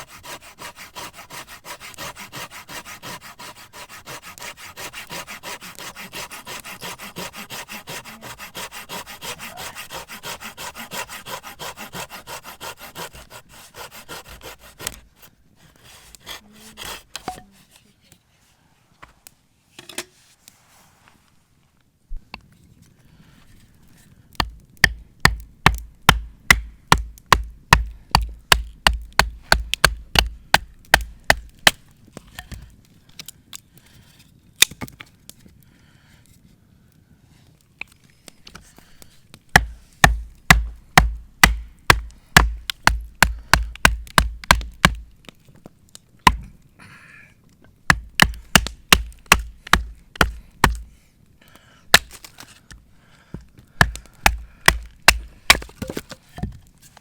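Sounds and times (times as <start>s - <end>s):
firewood being chopped: 0.0s - 15.1s, 24.3s - 33.3s, 34.6s - 35.1s, 39.5s - 46.6s, 47.8s - 51.0s, 51.9s - 56.6s.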